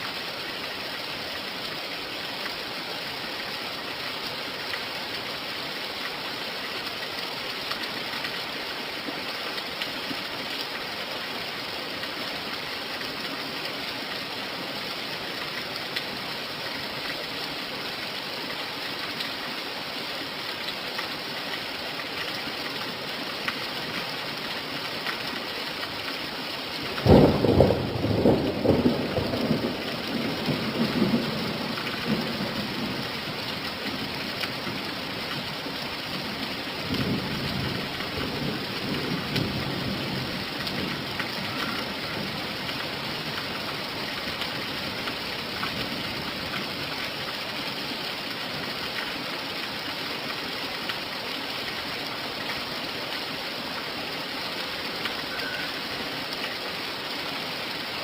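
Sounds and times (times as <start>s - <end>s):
steady rain falling: 0.0s - 58.0s
rolling thunder: 27.0s - 29.8s.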